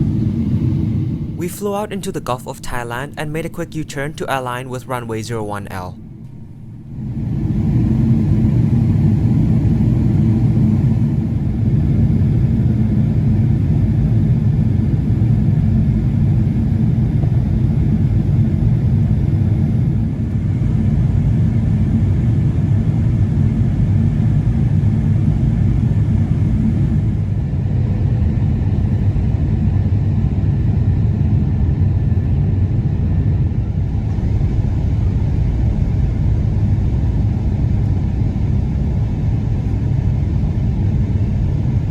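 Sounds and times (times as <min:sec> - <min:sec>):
airliner cabin engine rumble: 0:00.0 - 0:41.9.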